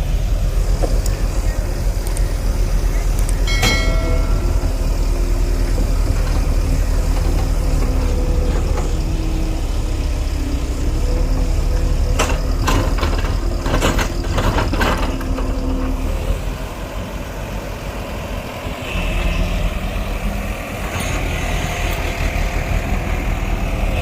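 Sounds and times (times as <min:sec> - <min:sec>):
heavy diesel engine running: 0:00.0 - 0:24.0
sharp metallic knocks: 0:03.4 - 0:09.0.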